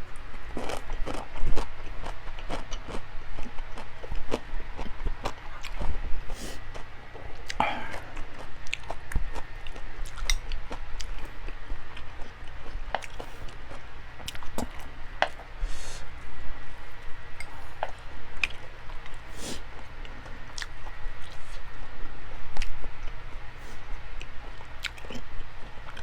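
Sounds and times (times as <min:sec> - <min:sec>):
wet chewing: 0:00.6 - 0:15.4, 0:24.5 - 0:25.3.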